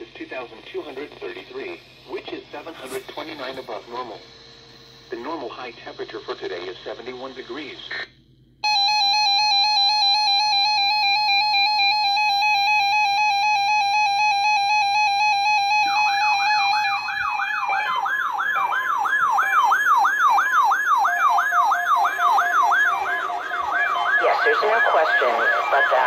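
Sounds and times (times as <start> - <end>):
electronic siren sweeping: 8.6 - 26.0
harsh two-tone alert signal: 21.1 - 26.0.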